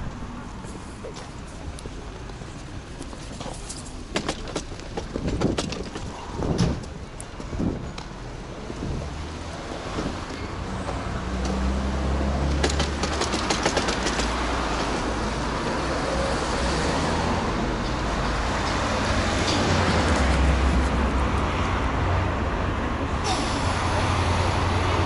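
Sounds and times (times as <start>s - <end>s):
traffic and road noise: 0.0s - 25.0s
wind on the microphone: 5.0s - 9.2s.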